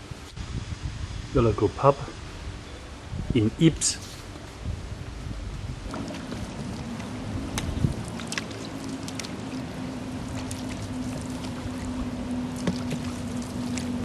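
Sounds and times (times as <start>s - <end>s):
low motor drone: 4.2s - 14.0s.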